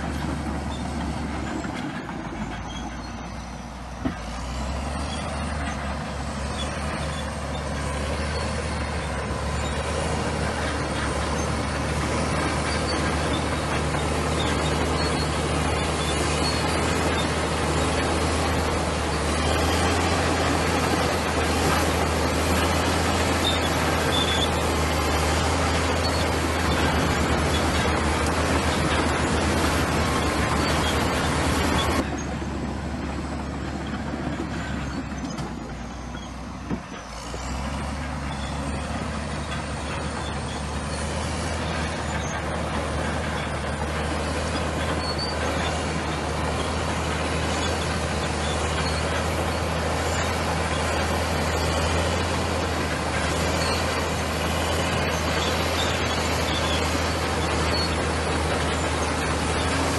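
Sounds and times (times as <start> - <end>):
bulldozer diesel engine humming: 0.0 - 59.9.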